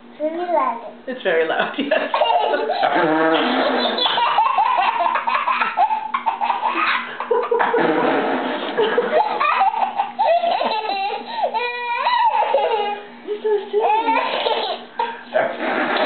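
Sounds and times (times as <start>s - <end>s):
people laughing together: 1.8s - 9.6s, 13.2s - 14.3s
high-pitched squeals of laughter: 2.4s - 7.2s.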